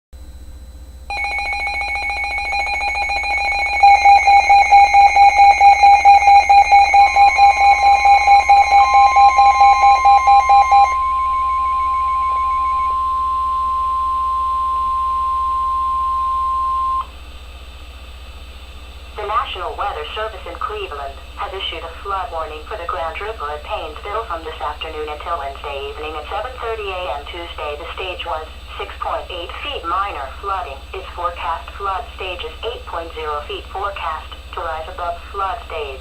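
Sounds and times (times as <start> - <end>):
steady single-pitch alarm tone: 0.4 - 17.1
pulsing alert beeping: 1.1 - 12.9.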